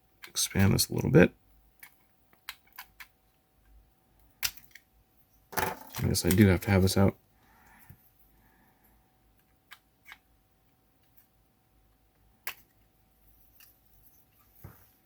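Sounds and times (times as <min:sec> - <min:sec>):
small parts clicking and tapping: 0:01.6 - 0:04.9, 0:09.3 - 0:11.3, 0:11.9 - 0:13.8.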